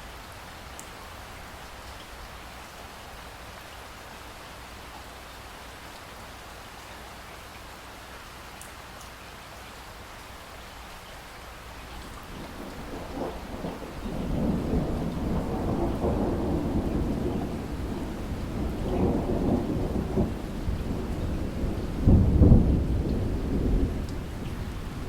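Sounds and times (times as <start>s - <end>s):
steady falling rain: 0.0s - 25.0s
thunder rumbling: 12.2s - 25.0s
thunder clap: 12.3s - 25.0s.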